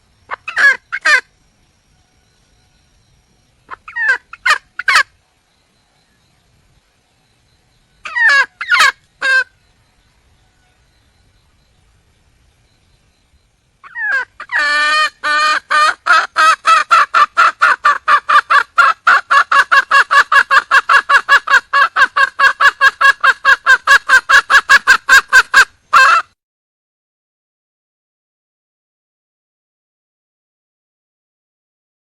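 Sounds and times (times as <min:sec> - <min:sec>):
hen cackling: 0:00.3 - 0:01.3, 0:03.7 - 0:05.1, 0:08.0 - 0:09.6, 0:13.8 - 0:26.4.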